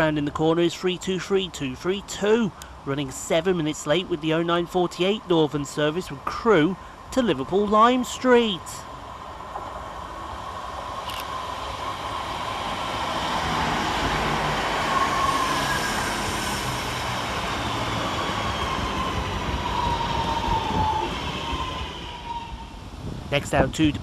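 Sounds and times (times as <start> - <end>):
electric train arriving: 0.0 - 23.4
train whine falling in pitch: 13.9 - 22.9.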